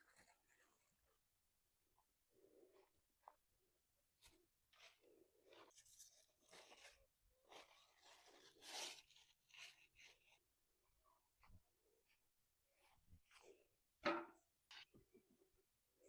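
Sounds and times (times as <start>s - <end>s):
faint rustling and crunching: 0.0s - 1.2s, 4.2s - 15.2s.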